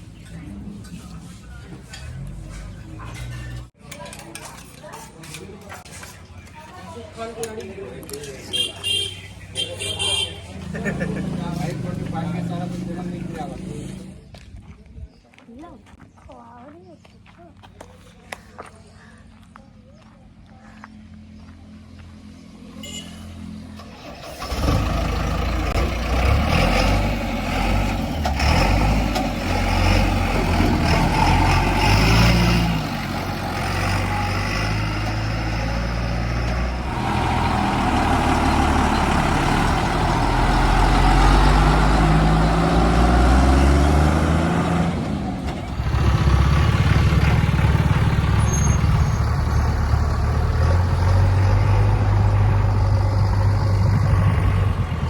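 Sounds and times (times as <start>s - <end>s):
diesel engine revving under load: 9.6s - 14.2s, 23.3s - 55.0s.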